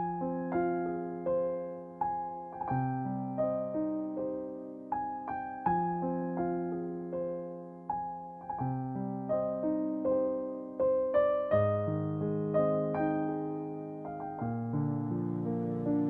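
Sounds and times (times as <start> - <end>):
slow gentle piano: 0.0 - 16.0.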